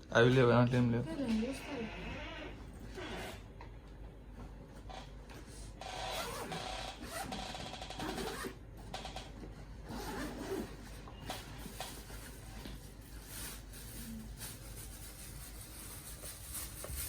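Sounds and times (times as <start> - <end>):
packaging rustling and scraping: 10.2 - 17.0.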